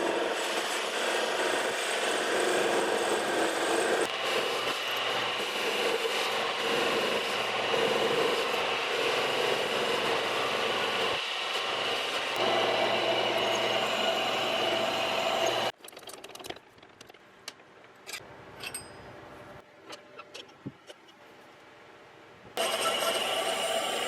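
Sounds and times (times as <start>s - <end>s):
lathe motor whine and cutting: 0.0s - 15.7s, 22.6s - 24.0s.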